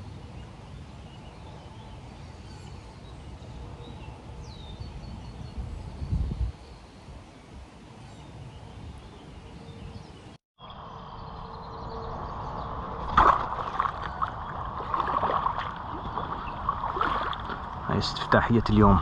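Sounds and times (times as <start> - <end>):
steady outdoor noise: 0.0 - 19.0
water splashing and sloshing: 12.9 - 17.9.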